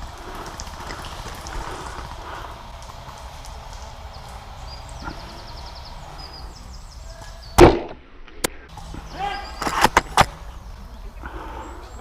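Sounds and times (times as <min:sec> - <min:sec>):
airsoft rifle shot thump: 0:07.6 - 0:08.6.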